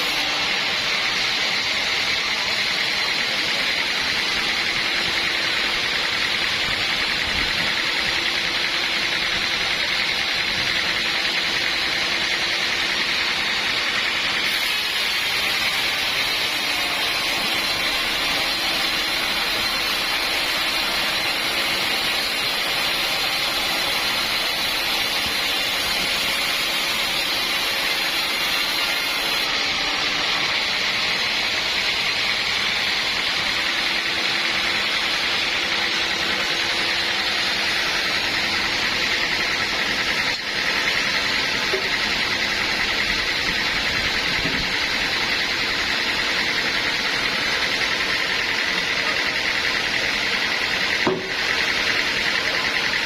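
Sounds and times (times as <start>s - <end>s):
saw running with high whine: 0.0s - 53.0s.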